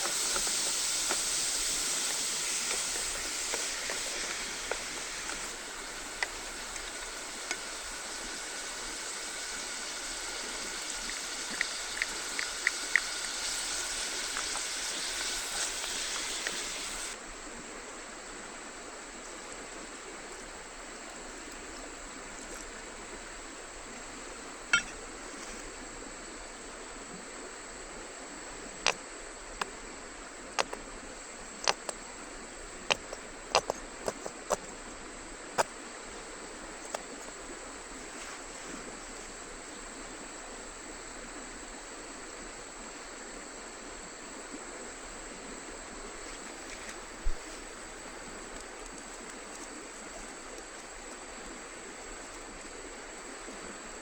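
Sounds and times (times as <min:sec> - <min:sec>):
river water flowing: 0:00.0 - 0:54.0.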